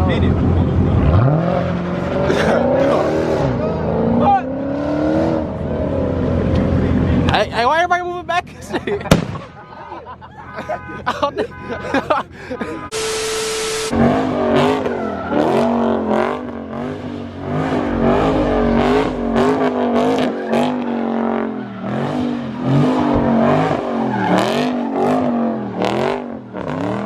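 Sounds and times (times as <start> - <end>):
car engine revving: 0.2 - 7.3, 13.9 - 27.0
exhaust cracks: 14.2 - 26.3.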